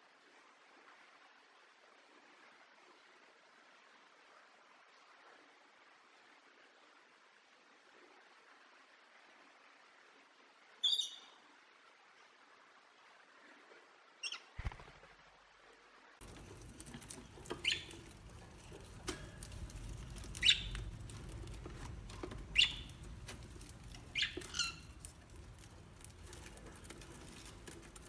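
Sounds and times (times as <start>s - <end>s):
light clicking and tapping: 16.2s - 28.0s.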